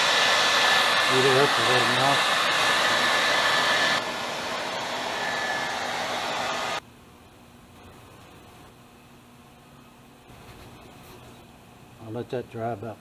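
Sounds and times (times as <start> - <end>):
hair dryer whining: 0.0 - 6.8.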